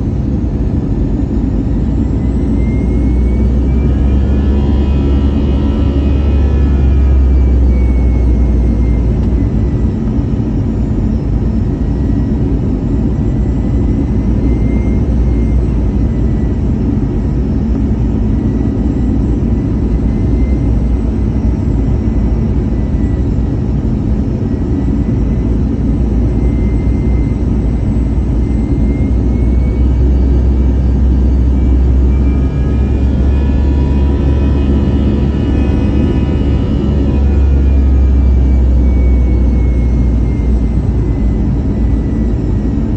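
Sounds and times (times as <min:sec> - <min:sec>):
jet engine rumble: 0:00.0 - 0:42.9
jet engine whine: 0:00.0 - 0:42.9.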